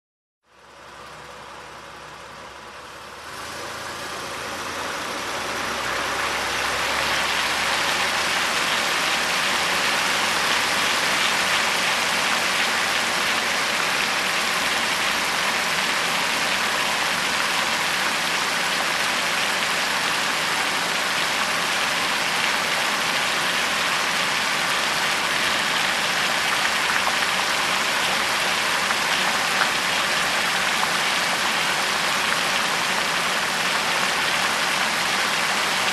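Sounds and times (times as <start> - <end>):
car engine hum: 0.7 - 35.5
road and wind noise: 0.9 - 35.9.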